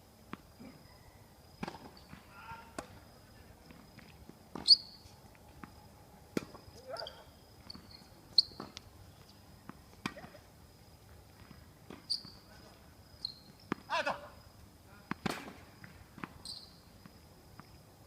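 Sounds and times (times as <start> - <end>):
tennis ball hit by rackets: 1.6 - 3.0, 5.6 - 6.7, 9.7 - 10.4, 15.1 - 16.4.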